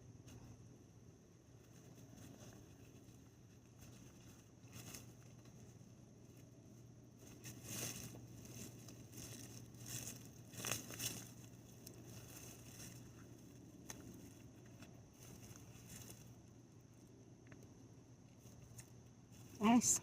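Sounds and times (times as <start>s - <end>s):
hands digging through soil: 6.4s - 16.4s.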